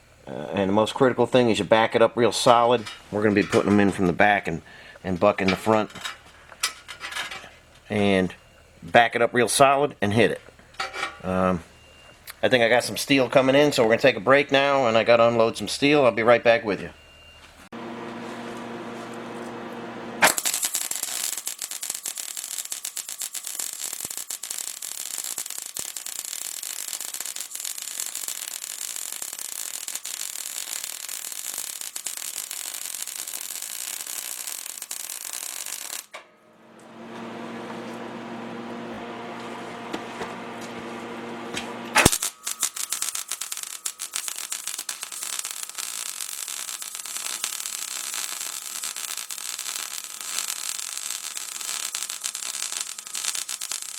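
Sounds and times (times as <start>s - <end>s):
steady humming: 17.8s - 20.4s, 36.2s - 45.8s
welding arc crackling: 18.2s - 36.2s, 38.8s - 53.9s.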